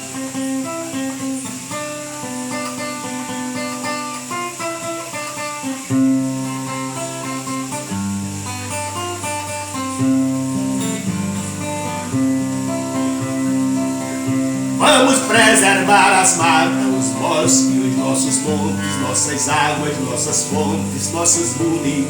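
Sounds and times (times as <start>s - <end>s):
plucked acoustic strings melody: 2.2s - 22.0s
sustained bass notes: 14.7s - 22.0s.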